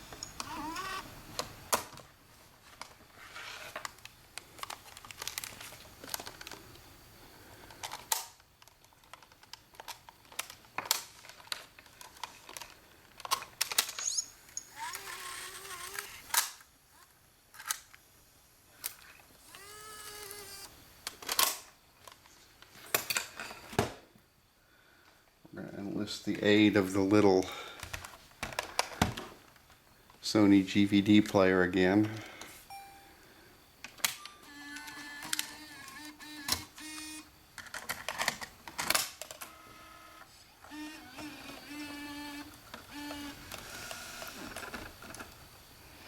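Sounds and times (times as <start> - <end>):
camcorder mechanical clicks and clunks: 13.2 - 18.0, 33.8 - 45.4.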